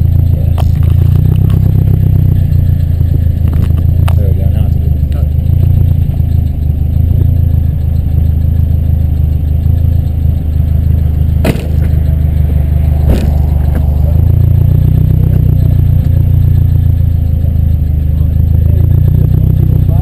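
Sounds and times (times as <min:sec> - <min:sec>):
car engine running at low revs: 0:00.0 - 0:20.0
sharp knocks: 0:11.4 - 0:12.1, 0:13.0 - 0:14.0.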